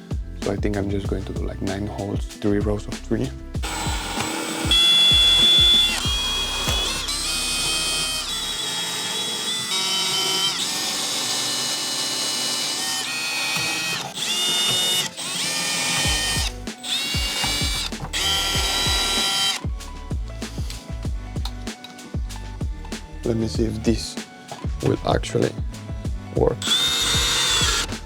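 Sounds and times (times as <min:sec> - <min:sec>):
background music with bass beat: 0:00.0 - 0:08.5, 0:16.0 - 0:28.0
cordless drill whine: 0:03.6 - 0:19.7, 0:26.6 - 0:28.0.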